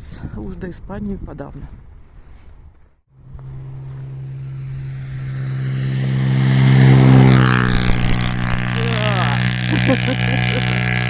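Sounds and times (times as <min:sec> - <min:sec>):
rally car engine approaching: 0:03.2 - 0:11.0.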